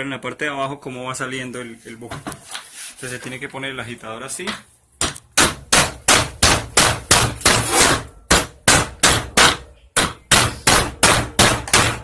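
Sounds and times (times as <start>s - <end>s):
hammer striking metal: 5.0s - 12.0s.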